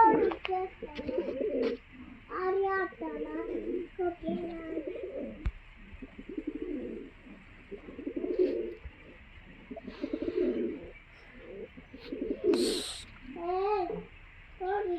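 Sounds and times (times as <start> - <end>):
pigeons cooing: 0.0 - 14.9
hissy noise burst: 12.5 - 13.1.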